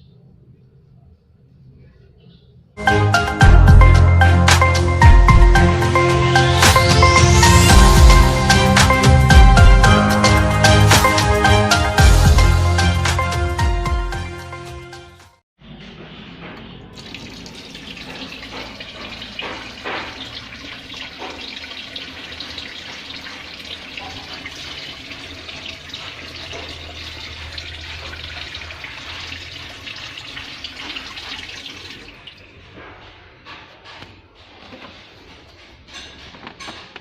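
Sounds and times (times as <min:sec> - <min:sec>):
water running from a tap: 0:17.0 - 0:32.7.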